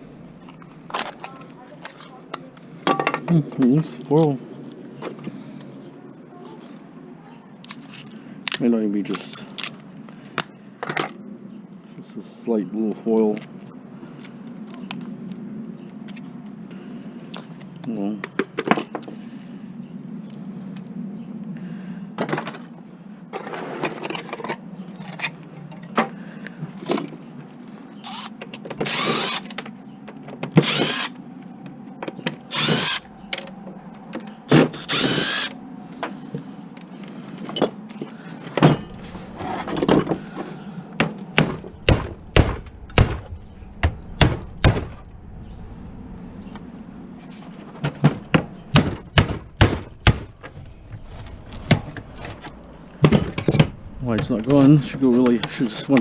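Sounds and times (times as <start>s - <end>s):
metal scraping: 38.5s - 40.6s
metal knocks and clanks: 38.6s - 40.2s, 41.0s - 45.1s, 47.8s - 56.0s.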